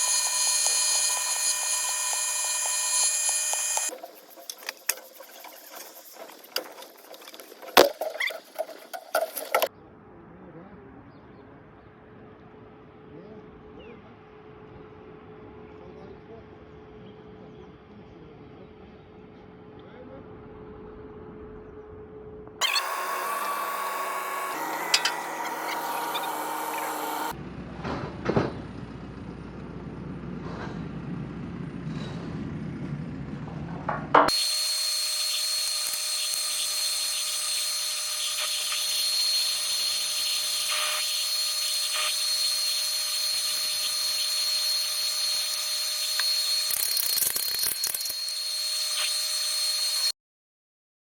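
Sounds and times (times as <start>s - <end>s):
power tool whining: 0.0s - 4.0s, 22.6s - 27.4s, 34.3s - 50.2s.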